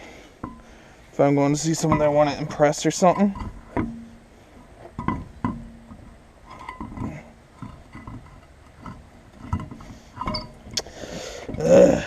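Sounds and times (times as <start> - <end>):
metal parts and tools clinking: 1.7 - 4.2, 4.9 - 10.8.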